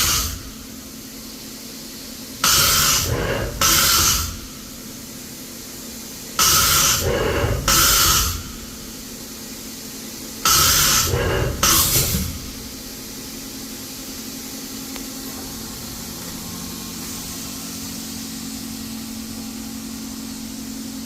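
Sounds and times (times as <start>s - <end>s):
short blasts of hissing air: 0.0s - 5.0s, 6.4s - 9.0s, 10.4s - 12.9s
steady machine hum: 0.0s - 21.0s.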